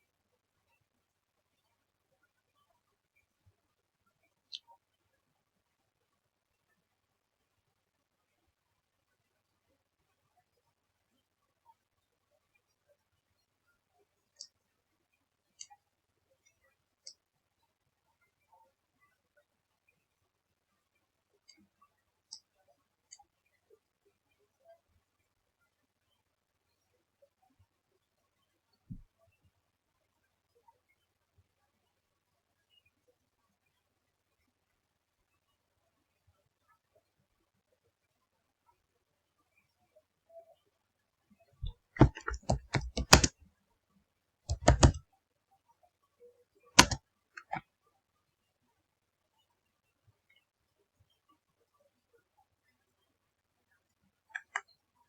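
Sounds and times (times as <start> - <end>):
computer mouse clicks: 41.6 - 43.4, 44.5 - 45.0, 46.8 - 47.6, 54.3 - 54.7.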